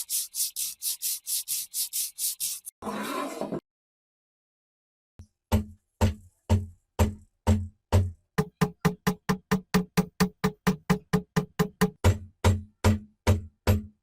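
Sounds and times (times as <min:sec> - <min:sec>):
pitched drum beat: 0:06.5 - 0:12.6.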